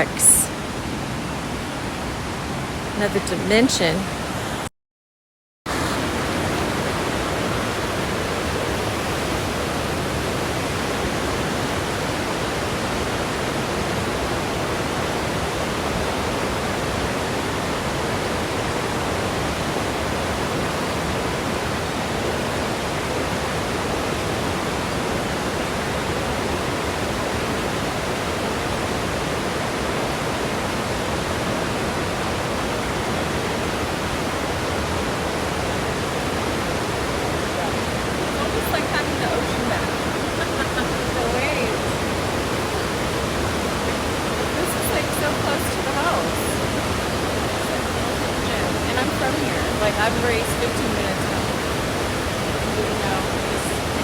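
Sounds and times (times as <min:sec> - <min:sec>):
waterfall rushing: 0:00.0 - 0:04.7, 0:05.7 - 0:54.0.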